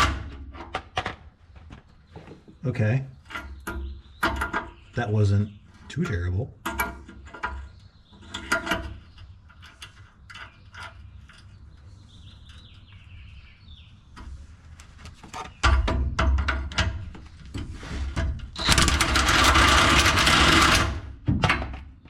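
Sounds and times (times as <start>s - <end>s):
knocking and scraping on metal: 0.0s - 4.9s, 5.8s - 13.3s, 14.1s - 22.0s.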